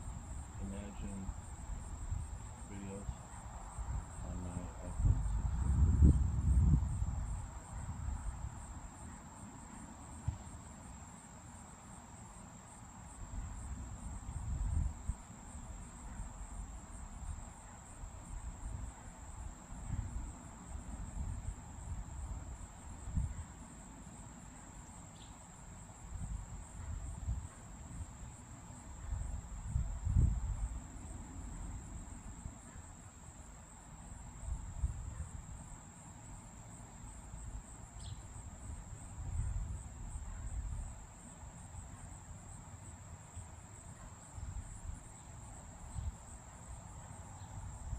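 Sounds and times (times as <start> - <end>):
insect chorus trilling: 0.0 - 47.9.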